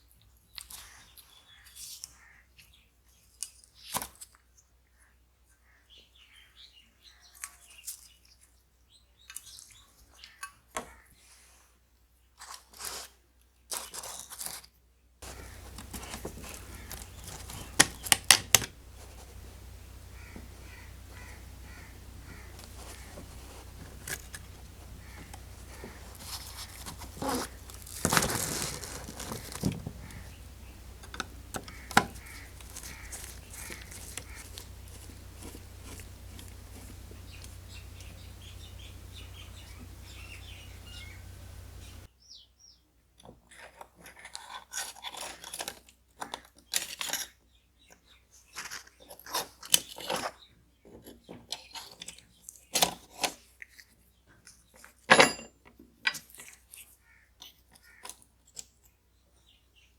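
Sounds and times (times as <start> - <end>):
small parts clicking and scraping: 13.7 - 39.1
steady low hum: 15.2 - 42.1.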